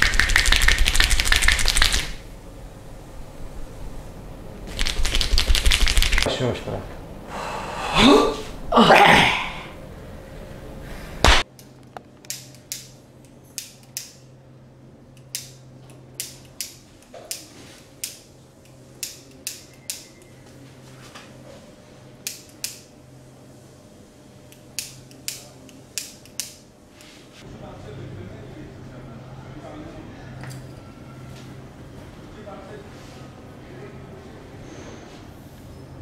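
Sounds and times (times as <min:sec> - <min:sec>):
loud sharp smack: 0:11.2 - 0:11.4.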